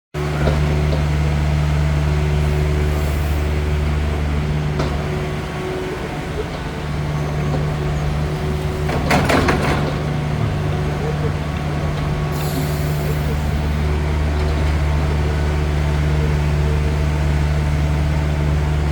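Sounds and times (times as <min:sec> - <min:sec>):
excavator diesel engine running: 0:00.2 - 0:18.9.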